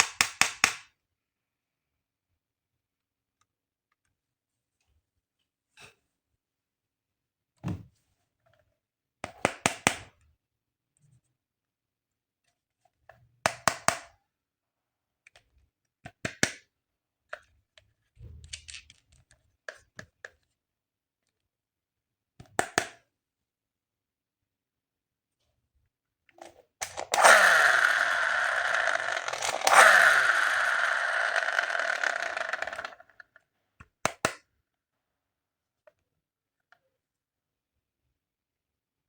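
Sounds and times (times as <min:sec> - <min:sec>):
toy pieces clicking and scraping: 0:26.8 - 0:33.3.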